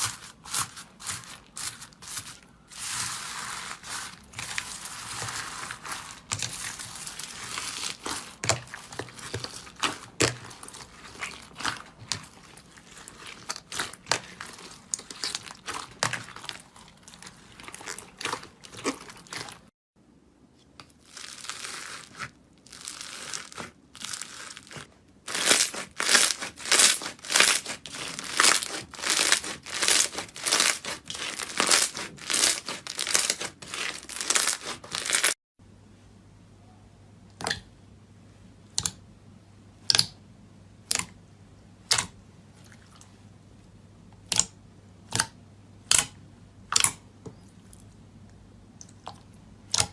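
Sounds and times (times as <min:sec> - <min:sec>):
slime squeezed crackling and popping: 0:02.8 - 0:19.7, 0:20.8 - 0:35.4.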